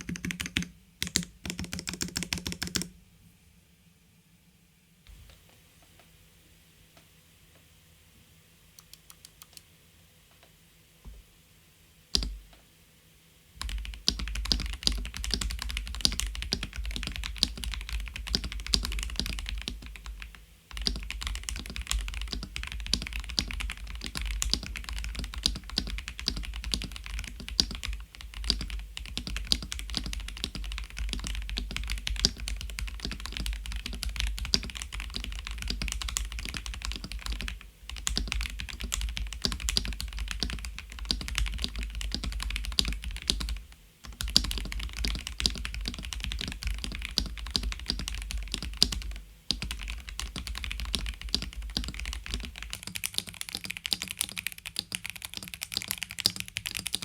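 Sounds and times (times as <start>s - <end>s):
mechanical keyboard typing: 0.0s - 2.9s, 13.6s - 57.0s.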